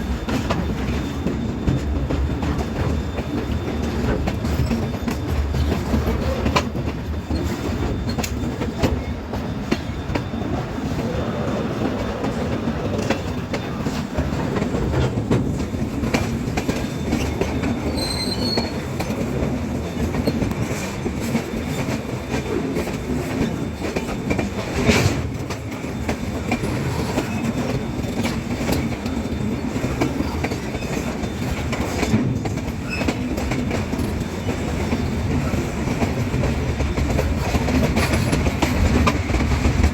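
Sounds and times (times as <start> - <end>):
train wheels rumbling: 0.0 - 39.9
high wheel squeal: 0.2 - 20.9.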